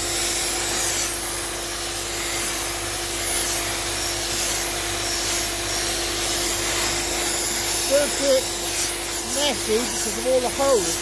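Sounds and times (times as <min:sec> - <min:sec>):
blast gun spraying hiss: 0:03.5 - 0:11.0
vacuum humming: 0:06.6 - 0:11.0.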